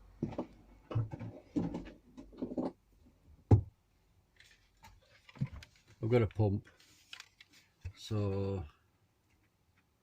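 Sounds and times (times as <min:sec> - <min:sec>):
soft handling sounds: 0:04.3 - 0:09.9.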